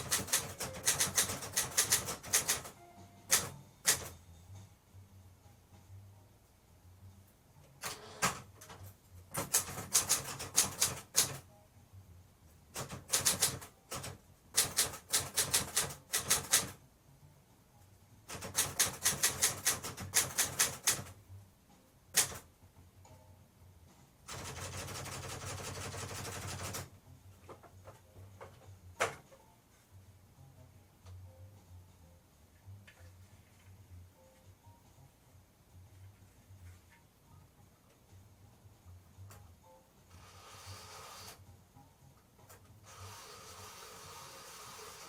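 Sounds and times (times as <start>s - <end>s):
typewriter key strikes: 0.0s - 4.1s, 7.8s - 11.4s, 12.8s - 16.8s, 18.3s - 21.1s, 22.2s - 22.4s.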